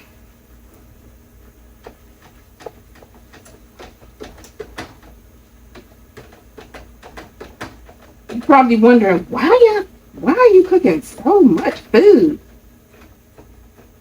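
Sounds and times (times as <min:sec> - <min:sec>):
low steady hum: 0:07.9 - 0:12.8.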